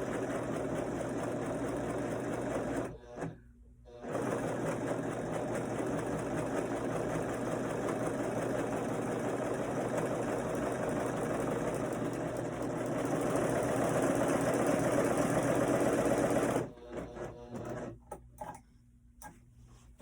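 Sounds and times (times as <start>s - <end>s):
serger sewing machine running: 0.0s - 18.0s.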